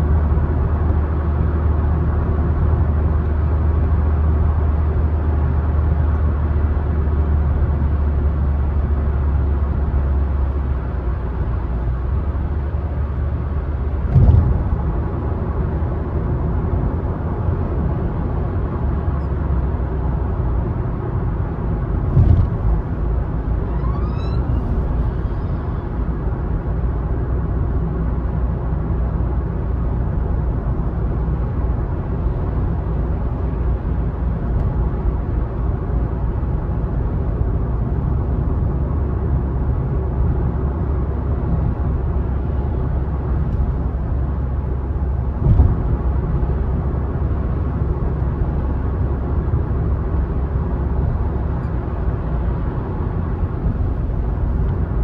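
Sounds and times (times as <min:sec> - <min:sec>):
car driving on road: 0:00.0 - 0:55.0
thump: 0:14.0 - 0:15.0, 0:22.1 - 0:23.1, 0:45.4 - 0:46.0.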